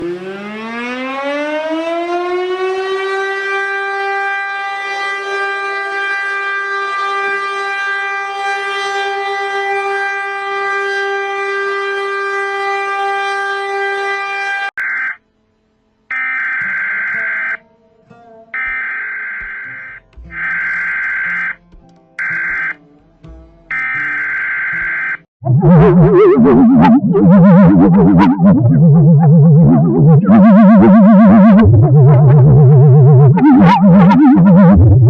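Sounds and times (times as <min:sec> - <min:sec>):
warning siren winding up: 0:00.0 - 0:15.2, 0:16.1 - 0:17.6, 0:18.6 - 0:21.6, 0:22.2 - 0:22.8, 0:23.7 - 0:35.0
shrill alert data tones: 0:16.1 - 0:17.6, 0:18.6 - 0:21.6, 0:22.2 - 0:22.8, 0:23.7 - 0:35.0.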